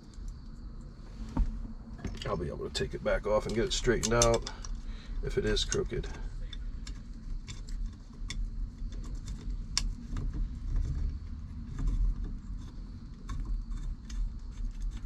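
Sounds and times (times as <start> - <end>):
low rumble: 0.0 - 7.1
metal parts and tools clicking: 3.4 - 4.8.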